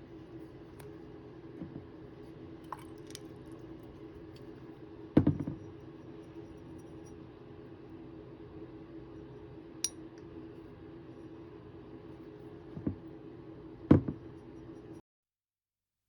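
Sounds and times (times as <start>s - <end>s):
low steady hum: 0.0s - 15.0s
knock on table: 5.2s - 5.6s, 13.9s - 14.2s.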